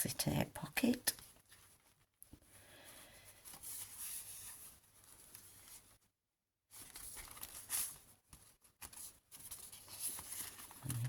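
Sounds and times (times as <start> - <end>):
paper rustling and crinkling: 1.1 - 2.5, 3.2 - 6.1, 6.7 - 11.0.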